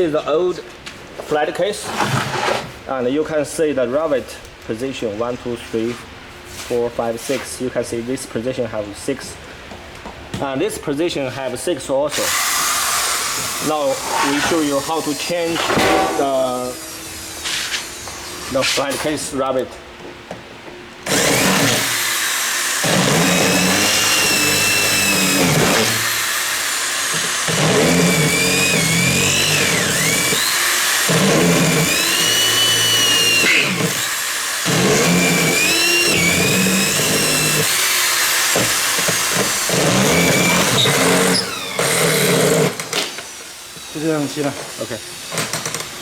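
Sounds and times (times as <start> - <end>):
electric drill whining: 12.1 - 15.3, 16.4 - 18.6, 21.0 - 46.0.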